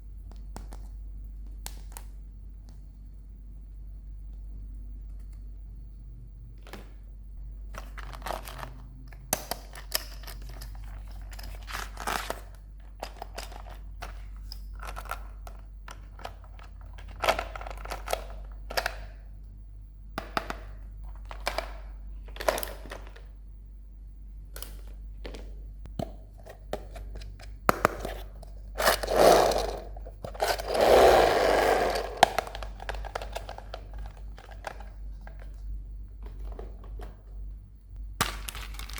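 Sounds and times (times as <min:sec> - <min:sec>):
plastic and cardboard crinkling: 0:07.6 - 0:19.0, 0:21.1 - 0:23.3, 0:31.9 - 0:37.4, 0:38.2 - 0:38.9
packaging rustling: 0:07.7 - 0:09.0, 0:31.8 - 0:37.3, 0:38.2 - 0:38.9.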